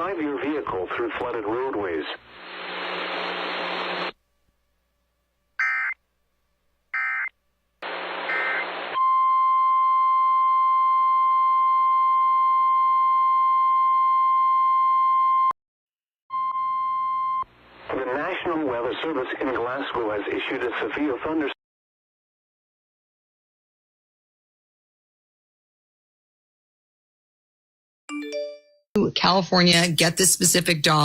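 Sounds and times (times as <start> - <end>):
radio static hiss: 0.1 - 4.2, 7.8 - 9.0, 17.6 - 21.6
digital data chirps: 5.6 - 6.0, 7.0 - 7.3, 8.2 - 8.8
steady alert tone: 5.6 - 6.0.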